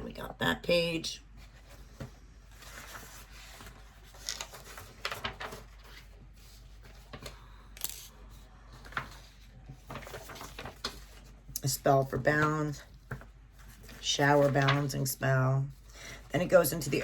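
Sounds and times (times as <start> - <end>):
paper pages rustling: 1.3 - 11.5, 12.2 - 15.1.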